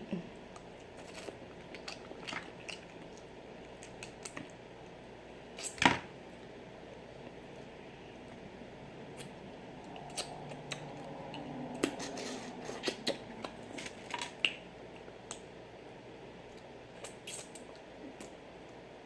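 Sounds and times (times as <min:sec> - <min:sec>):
wet chewing and lip smacking: 0:09.9 - 0:13.6, 0:16.5 - 0:18.4.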